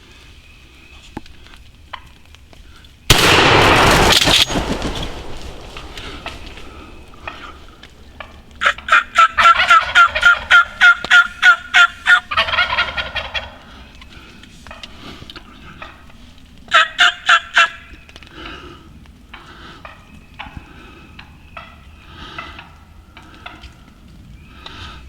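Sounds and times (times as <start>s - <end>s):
turkey yelping: 8.6s - 13.8s, 16.7s - 17.9s.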